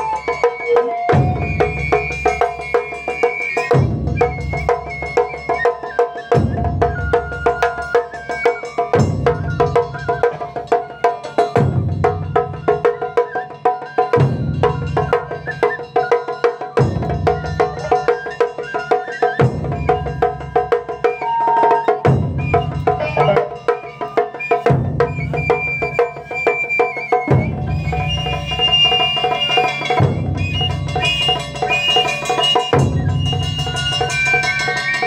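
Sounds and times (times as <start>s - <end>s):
drum ensemble playing: 0.0s - 5.4s, 8.8s - 13.1s, 19.4s - 35.0s.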